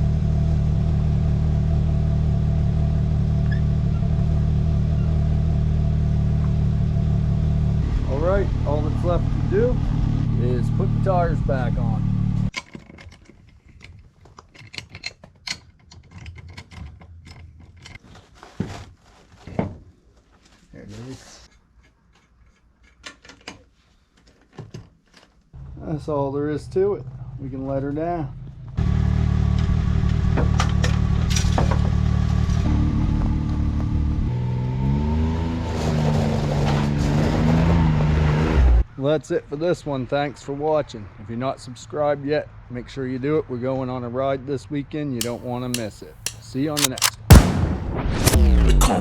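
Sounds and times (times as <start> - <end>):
engine running and revving: 0.0 - 12.5, 28.8 - 38.9
metallic clicks and clinks: 45.2 - 47.3.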